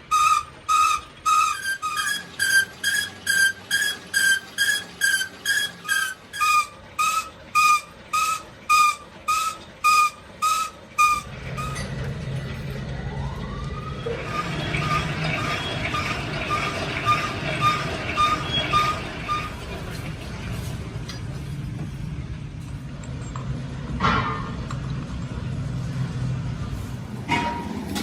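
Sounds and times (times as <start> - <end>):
low machine hum: 0.0 - 28.0.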